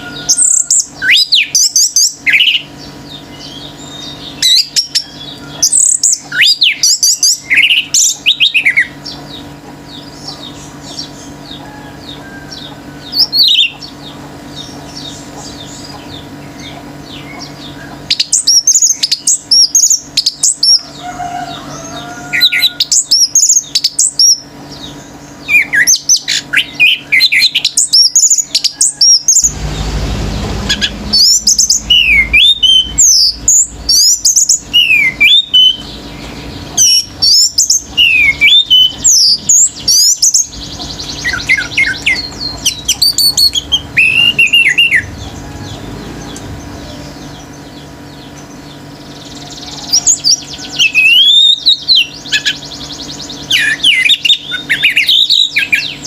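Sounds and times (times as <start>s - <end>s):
steady low hum: 0.0s - 56.0s
thrush singing: 26.4s - 56.0s
low rumbling noise: 28.8s - 54.9s.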